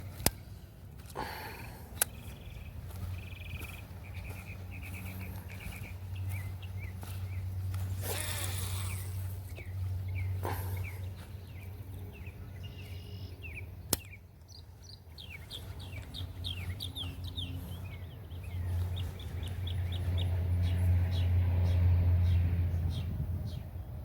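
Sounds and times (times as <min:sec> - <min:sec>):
small birds chirping: 0:00.0 - 0:23.8
steady low rumble: 0:00.0 - 0:24.0
sharp click: 0:13.9 - 0:14.2.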